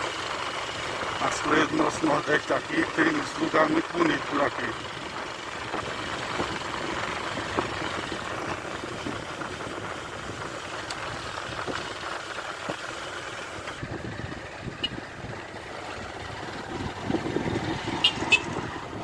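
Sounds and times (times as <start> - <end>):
small motorcycle running: 0.0 - 19.0.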